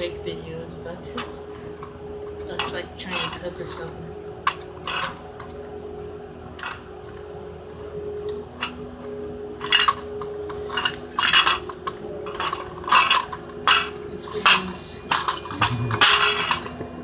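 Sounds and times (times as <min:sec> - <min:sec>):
steady low hum: 0:00.0 - 0:17.0
hard objects clattering: 0:01.1 - 0:05.8, 0:08.3 - 0:17.0.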